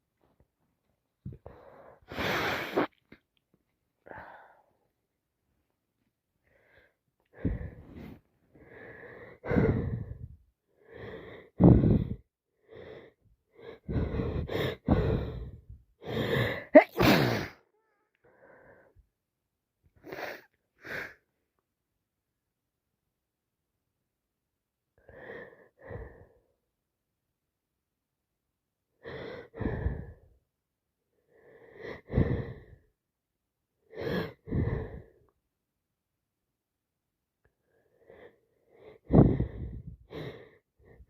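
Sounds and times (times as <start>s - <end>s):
wheezy gasping breaths: 1.3s - 3.0s, 6.4s - 17.6s, 29.0s - 30.3s, 31.3s - 32.9s, 33.9s - 35.3s, 37.7s - 41.0s
person sneezing: 16.7s - 17.6s.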